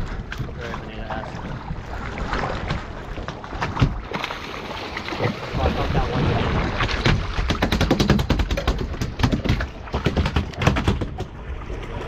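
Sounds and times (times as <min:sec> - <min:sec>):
fish tail beating on deck: 0:07.0 - 0:11.3.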